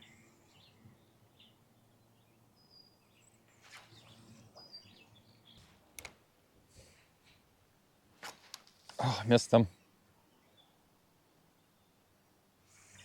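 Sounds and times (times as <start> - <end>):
faint bird chirps: 0.0 - 5.8, 9.6 - 13.0.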